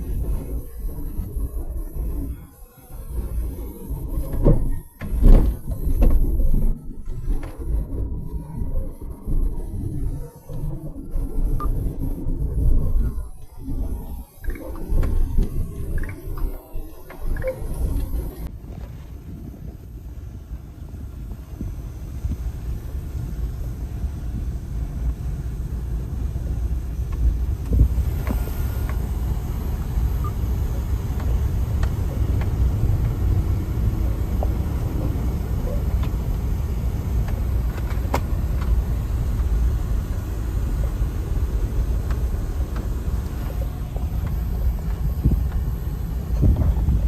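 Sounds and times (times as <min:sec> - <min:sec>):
van engine and road rumble: 0:00.0 - 0:47.0
faint clicks: 0:12.9 - 0:18.5.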